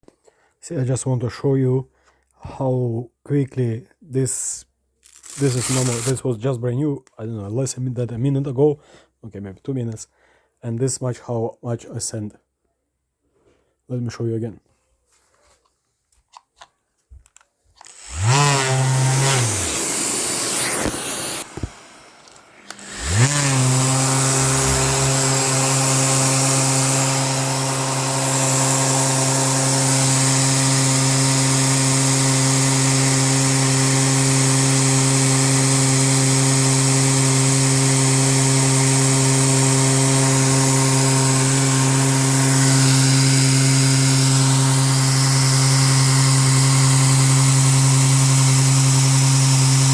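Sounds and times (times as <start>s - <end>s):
electric sander running: 5.0s - 6.2s, 17.8s - 49.9s.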